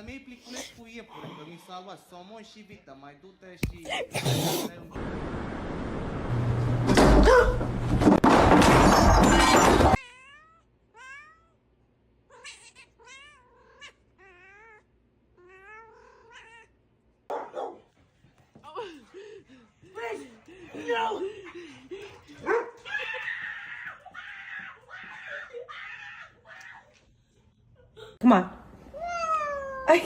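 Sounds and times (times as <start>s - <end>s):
cat meowing: 10.0s - 11.6s, 12.3s - 16.8s.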